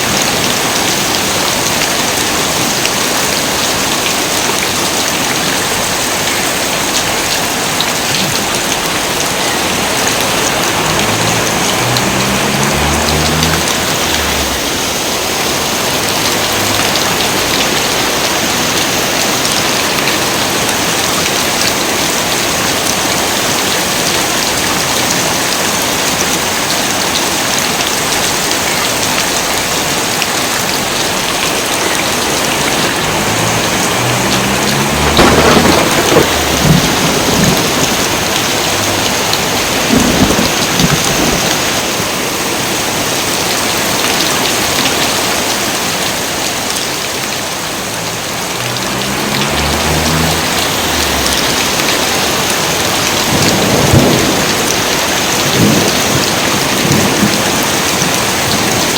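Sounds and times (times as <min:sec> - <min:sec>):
heavy rain pouring: 0:00.0 - 0:58.9
thunder rumbling: 0:08.7 - 0:18.3, 0:31.2 - 0:41.8, 0:47.8 - 0:58.6.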